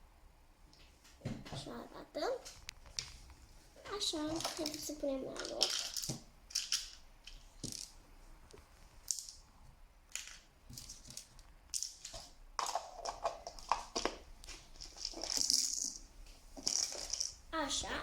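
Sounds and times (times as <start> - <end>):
plastic toy pieces clicking: 4.4 - 7.9, 14.8 - 16.0, 16.6 - 17.4.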